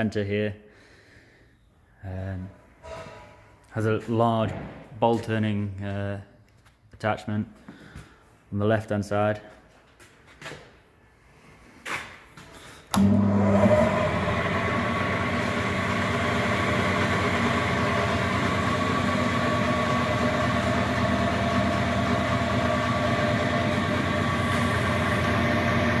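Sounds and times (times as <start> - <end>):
wood lathe humming: 13.0 - 26.0.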